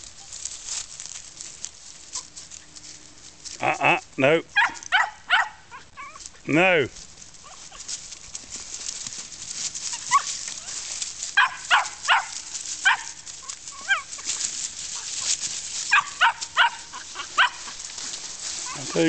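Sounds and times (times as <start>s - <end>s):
puppies barking sharply: 4.5s - 6.2s, 9.9s - 10.7s, 11.4s - 14.3s, 15.8s - 17.8s.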